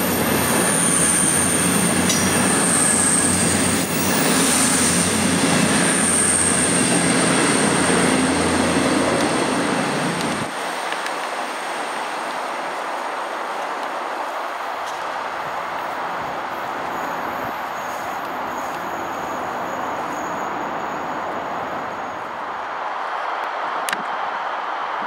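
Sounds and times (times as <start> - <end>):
high wheel squeal: 0.0 - 8.6, 16.8 - 22.4
train wheels rumbling on rail: 0.0 - 24.2.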